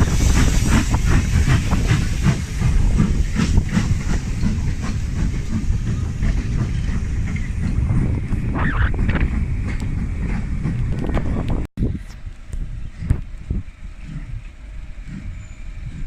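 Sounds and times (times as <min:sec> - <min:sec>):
steam locomotive hissing: 0:00.0 - 0:10.8
heavy low rumble: 0:00.0 - 0:16.0.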